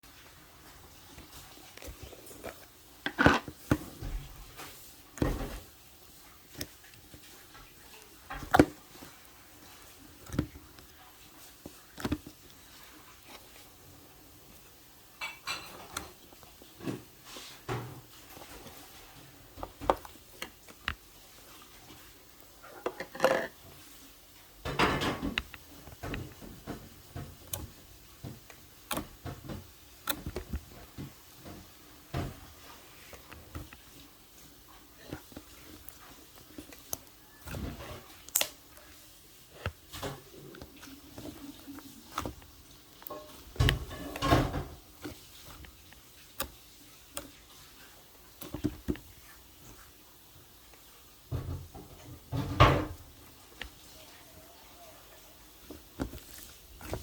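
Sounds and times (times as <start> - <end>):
dishes and cutlery clinking: 15.2 - 16.2, 43.0 - 44.8.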